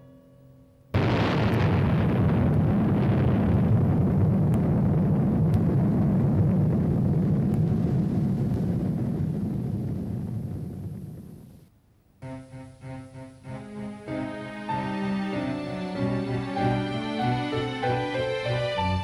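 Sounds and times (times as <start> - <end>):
deep roar of flames: 1.0 - 11.6
sudden blast: 1.0 - 11.6.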